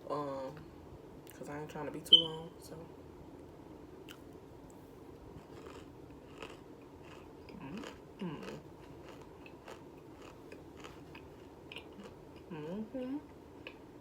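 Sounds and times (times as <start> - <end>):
crunchy biting and chewing: 5.4 - 12.5.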